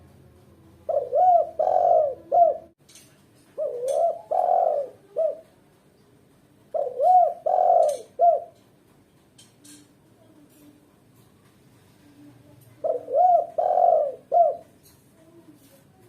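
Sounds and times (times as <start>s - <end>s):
dove cooing: 0.8s - 2.8s, 3.6s - 5.6s, 6.7s - 8.6s, 12.4s - 15.4s.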